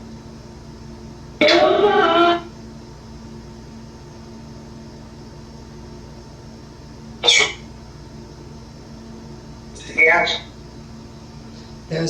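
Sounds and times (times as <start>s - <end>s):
person coughing: 1.4s - 2.4s, 7.2s - 7.6s.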